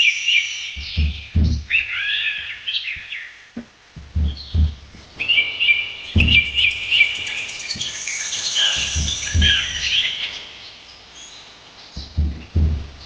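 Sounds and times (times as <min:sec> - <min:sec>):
flock of small birds chirping: 0:00.0 - 0:13.0
low thuds: 0:00.8 - 0:01.9, 0:03.0 - 0:10.3, 0:12.0 - 0:13.0.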